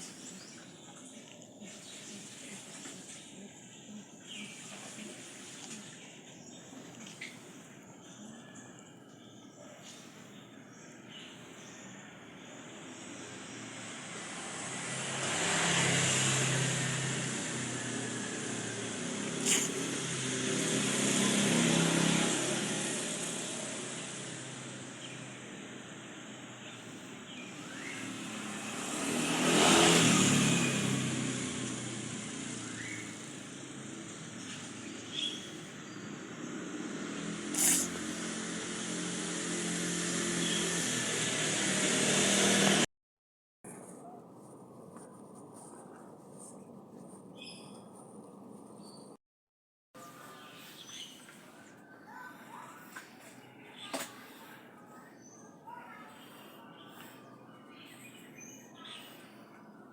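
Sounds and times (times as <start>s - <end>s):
vehicles passing: 11.6s - 42.9s, 50.0s - 59.9s.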